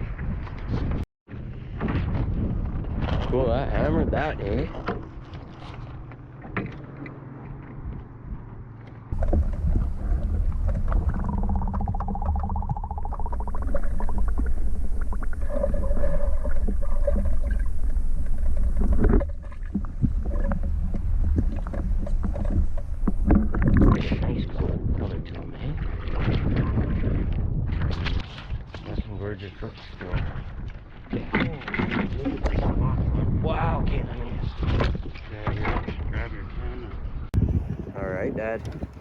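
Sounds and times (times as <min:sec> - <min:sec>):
wind buffeting microphone: 0:00.0 - 0:39.0
faint pitched sounds: 0:09.1 - 0:24.7.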